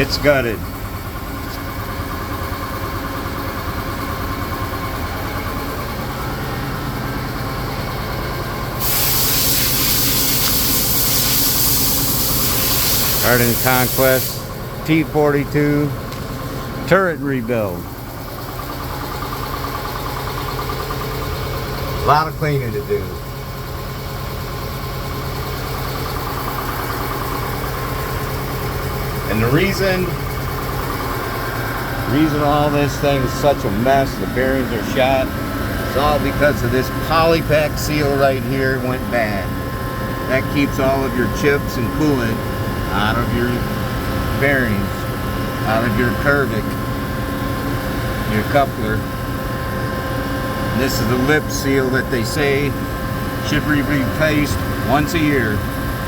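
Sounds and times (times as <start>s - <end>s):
shop machinery humming: 0.0s - 56.0s
loud even hiss: 8.8s - 14.5s.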